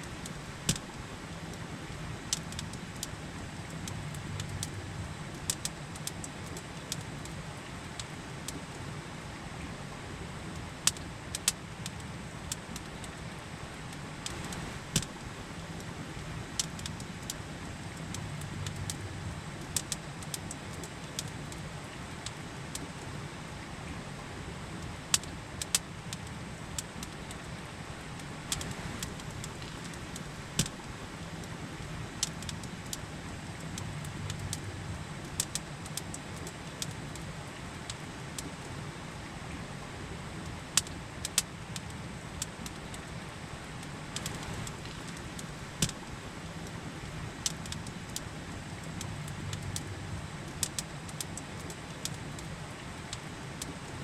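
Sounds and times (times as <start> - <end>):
campfire crackling and popping: 0.0 - 8.7, 10.4 - 23.1, 24.7 - 38.7, 40.3 - 54.0
river rushing: 13.0 - 54.0.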